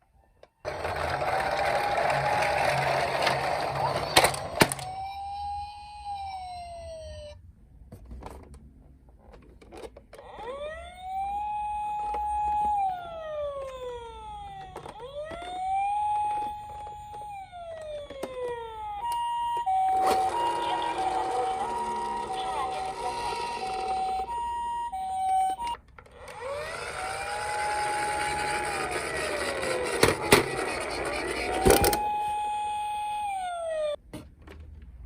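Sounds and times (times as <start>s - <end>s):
toy siren wailing: 1.6s - 7.4s, 10.1s - 34.0s
two-tone hi-lo siren: 4.6s - 7.4s, 10.3s - 34.0s.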